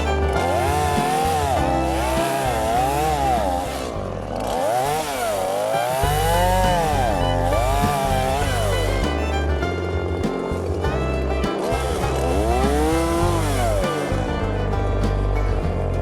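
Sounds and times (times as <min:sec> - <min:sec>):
background music: 0:00.0 - 0:16.0
chainsaw revving in a cut: 0:00.3 - 0:09.0, 0:11.8 - 0:14.2.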